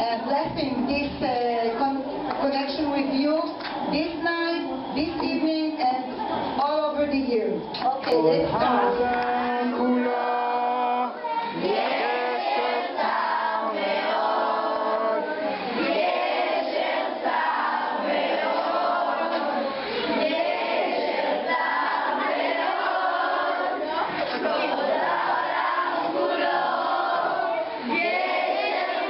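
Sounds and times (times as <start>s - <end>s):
group of voices singing in chorus: 8.0s - 29.0s.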